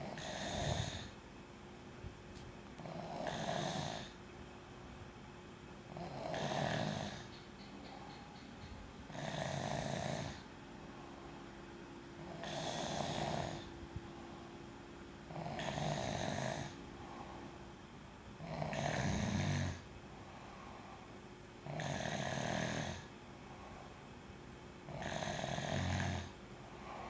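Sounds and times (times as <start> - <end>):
person snoring: 0.0 - 1.2, 2.8 - 4.2, 5.9 - 7.3, 9.1 - 10.5, 12.2 - 13.7, 15.3 - 17.3, 18.4 - 19.8, 21.6 - 23.1, 24.9 - 27.0
quiet breathing: 5.9 - 18.0, 18.7 - 27.0.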